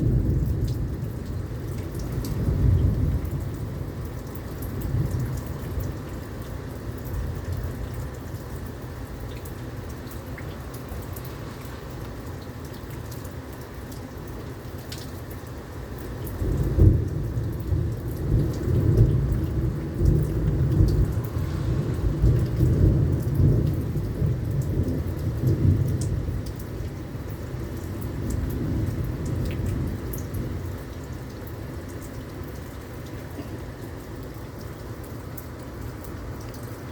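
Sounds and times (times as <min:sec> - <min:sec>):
pouring rain: 0:00.0 - 0:36.9
water drips: 0:00.0 - 0:36.9
thunder rumbling: 0:16.4 - 0:30.7.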